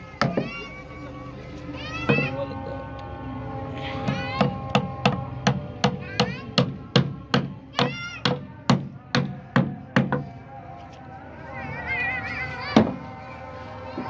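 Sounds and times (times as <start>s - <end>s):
hammer striking: 4.0s - 10.3s.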